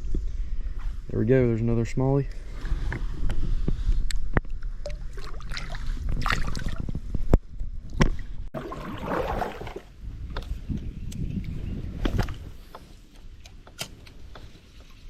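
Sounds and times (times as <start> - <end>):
creek water splashing and trickling: 4.8 - 6.9, 8.5 - 10.0
burst of splashing: 8.6 - 9.9.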